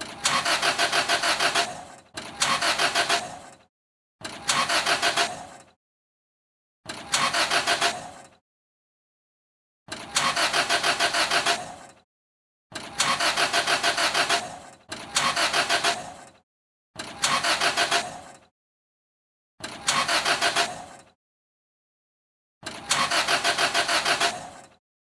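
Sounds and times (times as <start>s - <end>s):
car engine cranking: 0.0s - 5.7s, 6.9s - 8.4s, 9.9s - 12.0s, 12.7s - 16.4s, 17.0s - 18.4s, 19.6s - 21.1s, 22.6s - 24.8s.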